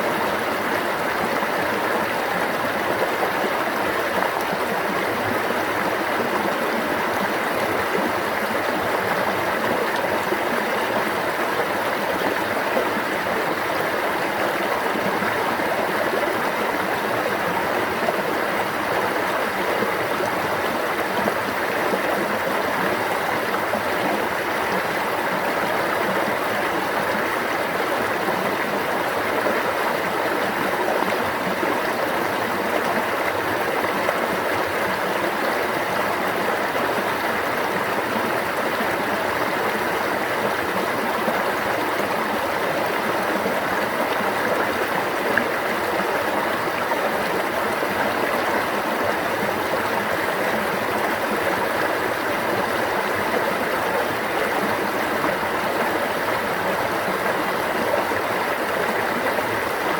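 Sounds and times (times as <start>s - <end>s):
stream water flowing: 0.0s - 59.9s.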